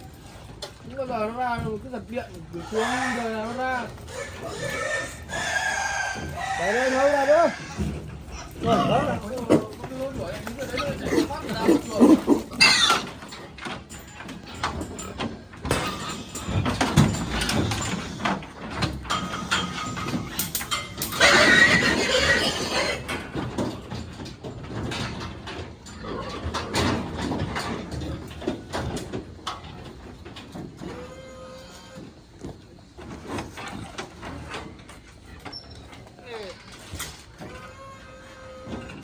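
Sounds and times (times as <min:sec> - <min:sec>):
pigs squealing and grunting: 0:02.5 - 0:13.3, 0:19.1 - 0:23.3, 0:30.8 - 0:32.1, 0:35.7 - 0:39.0
knocks and clatter: 0:07.3 - 0:21.2, 0:23.0 - 0:31.0.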